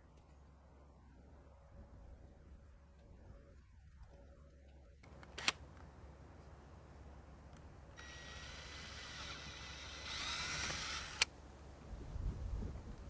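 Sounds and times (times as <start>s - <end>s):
power tool whining: 7.9s - 11.3s
power tool switch click: 8.0s - 11.3s.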